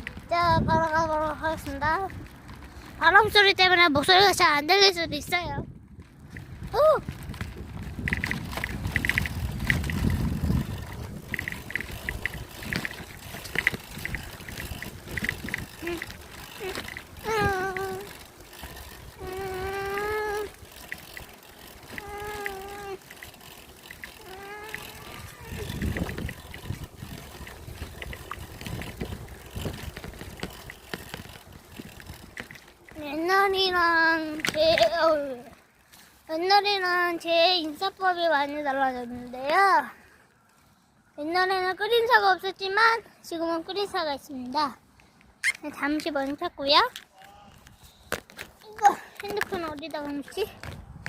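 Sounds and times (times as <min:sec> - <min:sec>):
wind buffeting microphone: 0:00.0 - 0:35.6, 0:48.6 - 0:51.0
light clicks and rattles: 0:06.0 - 0:36.0.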